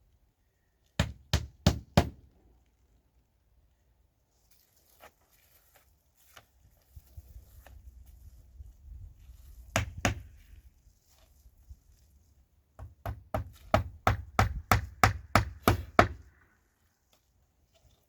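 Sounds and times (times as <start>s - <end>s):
hammer striking nails into wood: 1.0s - 2.2s, 9.7s - 10.3s, 12.8s - 16.2s.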